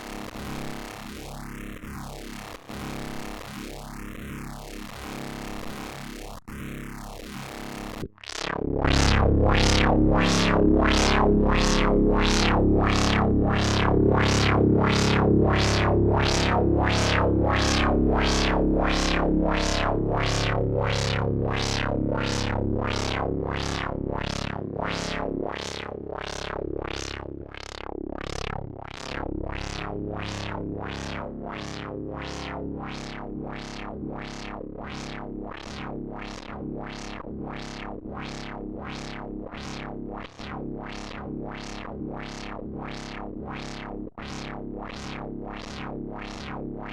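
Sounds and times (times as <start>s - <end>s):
buzzy swept synthetic drone: 7.8s - 35.3s.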